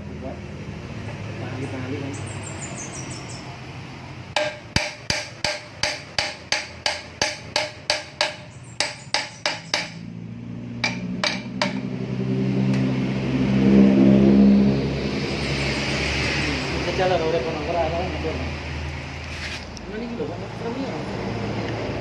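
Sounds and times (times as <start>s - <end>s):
hammer blows: 4.4s - 10.1s.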